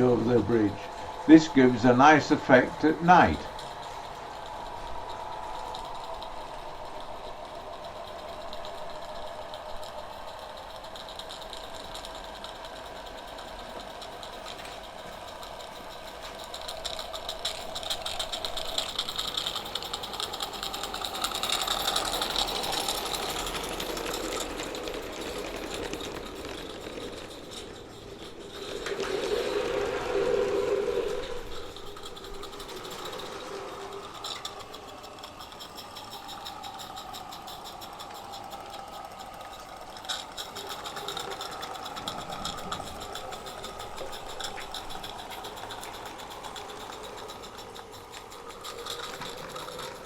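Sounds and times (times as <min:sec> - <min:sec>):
model train wheels clicking and rattling: 0:00.0 - 0:50.0.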